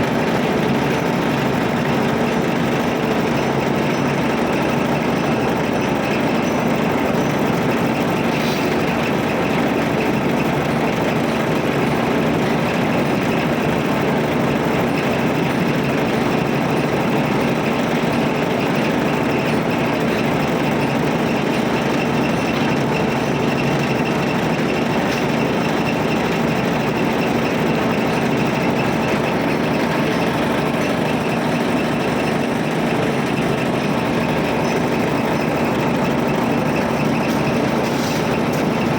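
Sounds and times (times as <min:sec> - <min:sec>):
heavy machine engine rumbling: 0:00.0 - 0:38.9.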